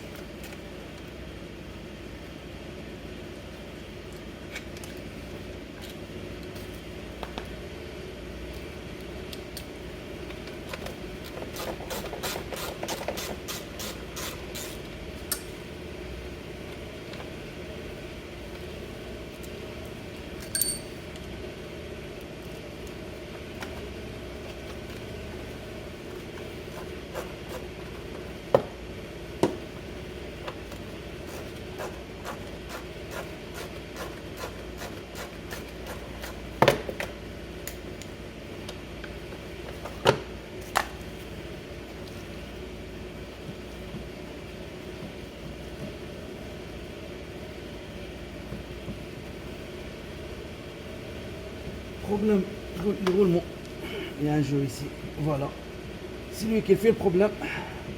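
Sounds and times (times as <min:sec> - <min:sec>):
steady low hum: 0:00.0 - 0:57.9
ringing metal clink: 0:20.4 - 0:21.0.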